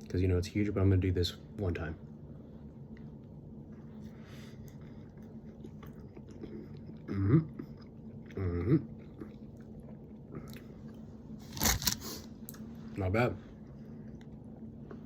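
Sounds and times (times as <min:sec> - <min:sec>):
man chewing food: 0:02.2 - 0:12.8, 0:13.5 - 0:15.0
hummed murmurs: 0:06.4 - 0:09.0.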